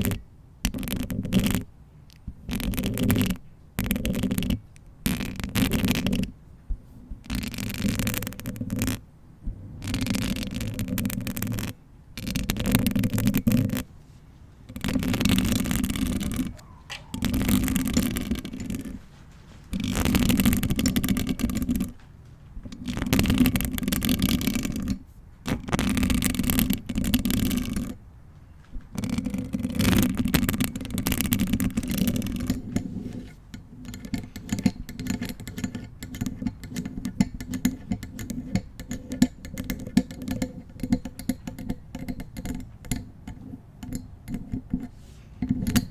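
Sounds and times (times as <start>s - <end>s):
fingernails scratching microphone: 0.0s - 1.7s, 2.4s - 22.0s, 28.9s - 40.7s.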